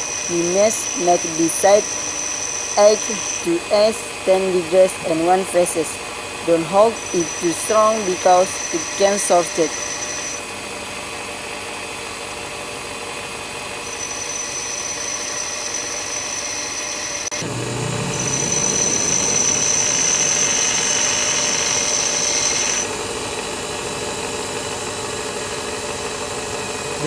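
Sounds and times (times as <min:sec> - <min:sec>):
bench grinder grinding metal: 0:00.0 - 0:05.8, 0:06.7 - 0:10.4, 0:13.8 - 0:22.9.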